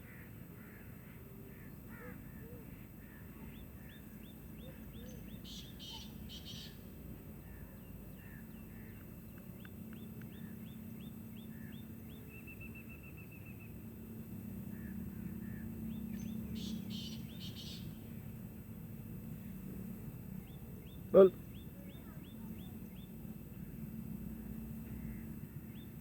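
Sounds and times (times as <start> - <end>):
birds chirping: 14.7 - 18.4, 19.4 - 23.8.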